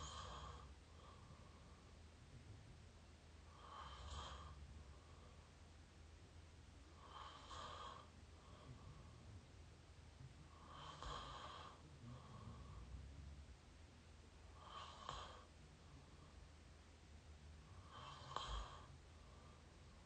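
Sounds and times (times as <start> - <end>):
person snoring through open mouth: 0.0 - 0.7, 3.6 - 4.6, 17.9 - 18.9.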